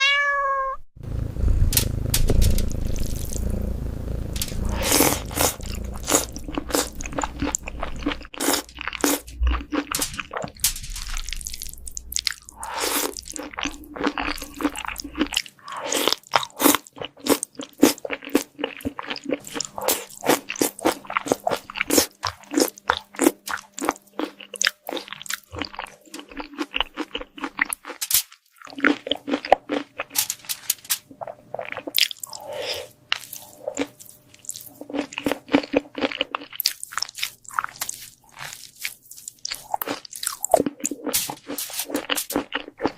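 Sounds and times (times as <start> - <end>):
low rumble: 1.0 - 7.8
cat crunching food: 1.8 - 15.4, 16.2 - 31.0, 33.2 - 42.9.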